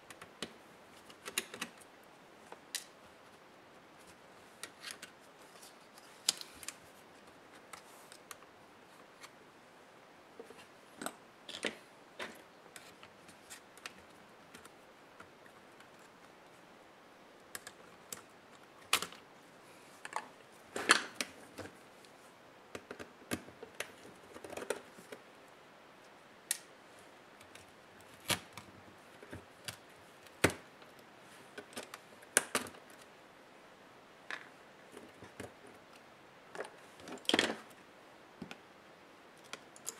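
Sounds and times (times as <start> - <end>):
plastic and metal parts clicking: 0.1 - 1.8.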